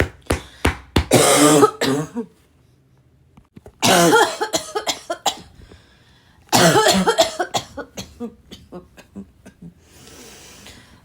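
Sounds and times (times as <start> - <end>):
woman coughing raspily: 1.1 - 2.3, 3.8 - 5.5, 6.5 - 9.1.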